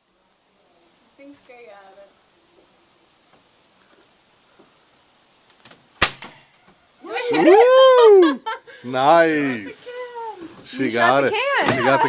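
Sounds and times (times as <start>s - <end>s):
air rifle crack: 5.5s - 6.8s
woman cheering: 7.0s - 8.6s, 9.6s - 12.0s.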